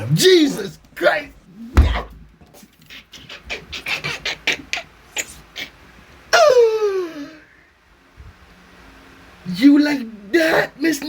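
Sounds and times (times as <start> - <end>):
woman moaning: 6.3 - 7.5.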